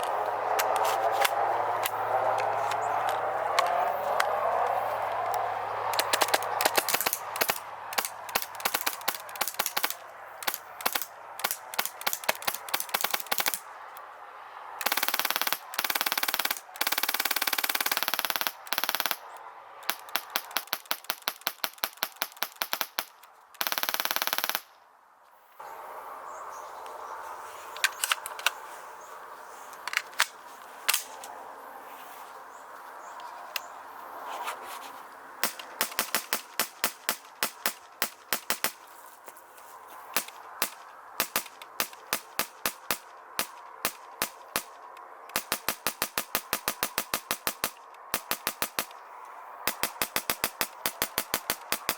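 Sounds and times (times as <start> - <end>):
airsoft guns firing: 5.9 - 13.6, 14.8 - 19.2, 19.8 - 24.7, 35.4 - 38.8, 40.2 - 49.0, 49.7 - 51.9.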